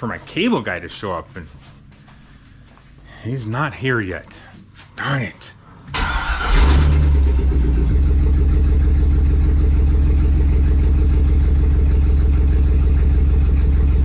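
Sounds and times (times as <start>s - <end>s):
car engine idling: 5.9s - 14.0s.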